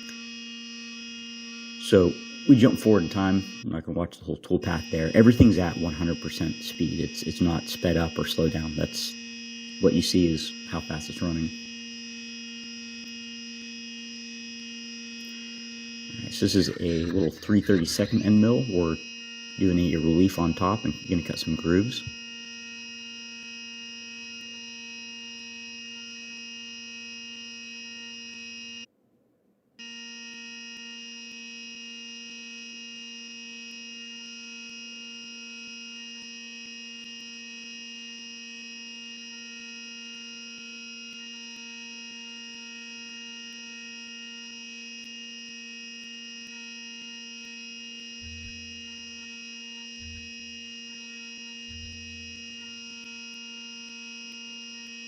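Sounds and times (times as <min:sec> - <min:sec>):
milling machine whine: 0:00.0 - 0:03.7, 0:04.5 - 0:28.9, 0:29.9 - 0:55.0
low thumps: 0:48.2 - 0:48.8, 0:50.0 - 0:50.4, 0:51.7 - 0:52.4.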